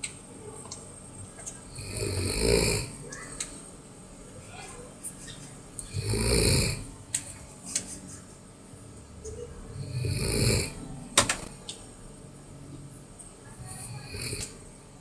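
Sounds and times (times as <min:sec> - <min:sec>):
person snoring loudly: 0:01.7 - 0:03.0, 0:05.9 - 0:06.9, 0:09.8 - 0:10.8, 0:13.8 - 0:14.5.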